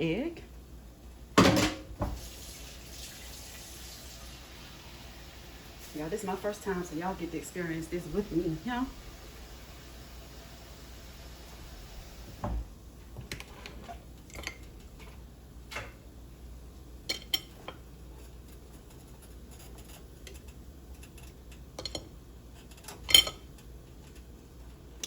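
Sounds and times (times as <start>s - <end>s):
utensils clinking against dishes: 17.1s - 17.8s, 21.8s - 24.2s.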